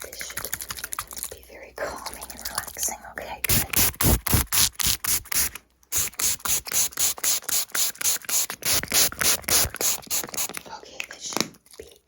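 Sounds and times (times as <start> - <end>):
rhythmic scratching strokes: 3.5 - 10.5.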